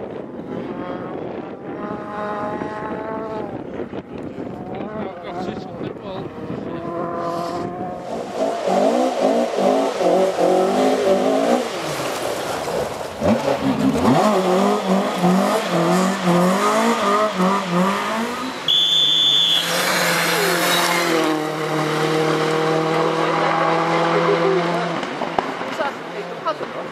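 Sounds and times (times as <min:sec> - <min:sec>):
rally car engine revving: 0:00.1 - 0:26.9
high whistle-like tone: 0:18.6 - 0:19.9.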